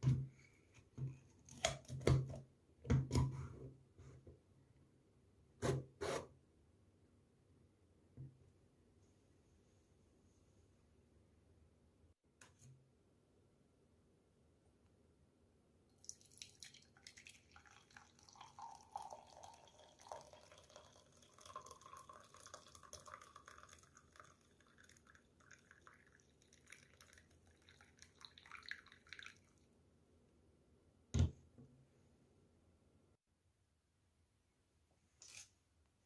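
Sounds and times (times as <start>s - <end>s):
water trickling and dripping: 16.0s - 29.5s.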